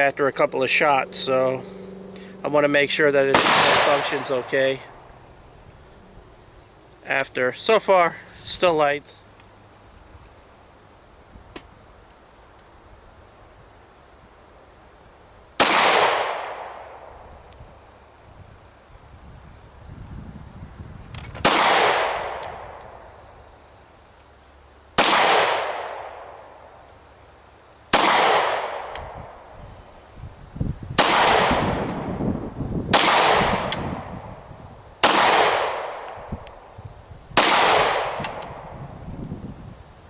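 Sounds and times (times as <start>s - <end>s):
pistol shots echoing: 3.3s - 5.1s, 15.6s - 17.1s, 21.4s - 22.7s, 25.0s - 26.4s, 27.9s - 29.0s, 31.0s - 32.1s, 32.9s - 33.8s, 35.0s - 36.1s, 37.4s - 38.7s.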